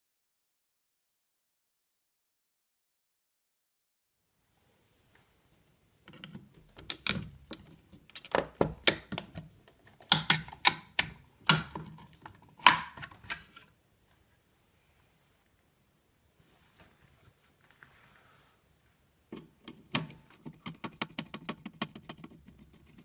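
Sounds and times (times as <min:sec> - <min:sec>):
hard objects clicking and knocking: 0:06.1 - 0:13.6, 0:19.3 - 0:23.0.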